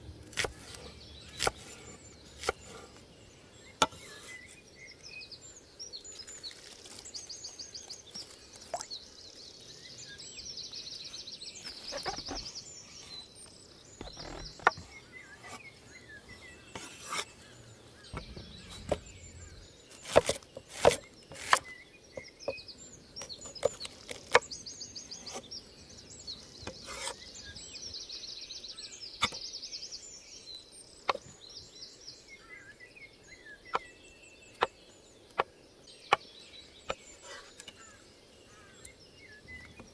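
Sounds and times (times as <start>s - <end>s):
songbird trilling: 9.9s - 13.3s.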